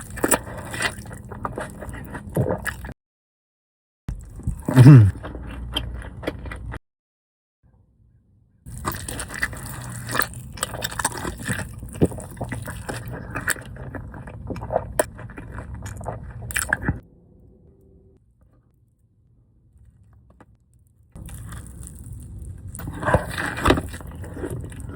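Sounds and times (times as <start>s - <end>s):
burger chewing with crunching: 0.0s - 2.9s, 4.1s - 6.8s, 8.7s - 17.0s, 21.2s - 24.9s.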